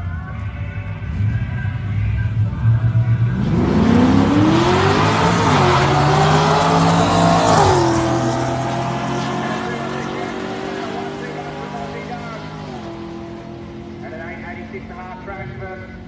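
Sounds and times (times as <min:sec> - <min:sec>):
engine revving with gear shifts: 0:02.3 - 0:14.9.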